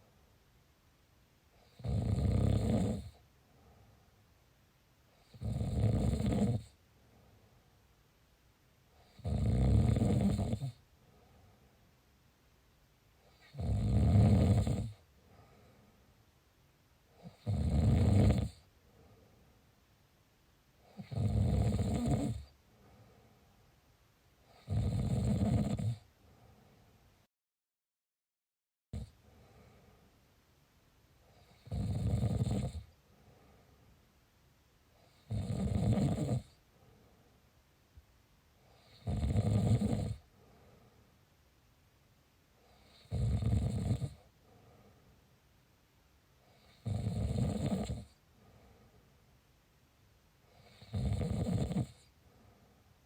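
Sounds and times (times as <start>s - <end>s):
heavy snores: 1.6s - 3.2s, 5.2s - 6.8s, 9.0s - 10.8s, 13.2s - 15.0s, 17.2s - 18.7s, 20.8s - 22.5s, 24.5s - 26.1s, 29.0s - 29.2s, 31.3s - 33.0s, 35.0s - 36.6s, 38.6s - 40.3s, 42.6s - 44.3s, 46.5s - 48.2s, 50.5s - 52.1s
faint breath out: 11.0s - 11.9s, 15.2s - 16.2s, 22.6s - 23.7s, 29.2s - 30.2s, 33.0s - 34.0s, 40.3s - 41.2s, 44.4s - 45.3s, 48.3s - 49.2s, 52.1s - 53.0s.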